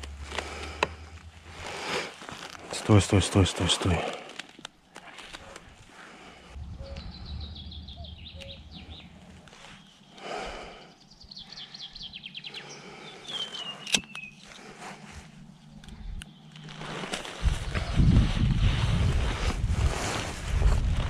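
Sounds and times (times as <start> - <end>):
rustling handling noise: 0.0 - 6.6, 16.4 - 18.0
small bird trilling: 6.6 - 10.1.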